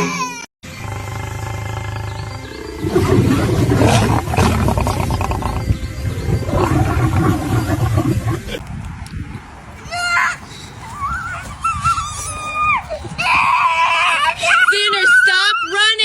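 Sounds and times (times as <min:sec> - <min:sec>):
rough animal vocalisation: 0:00.8 - 0:08.6.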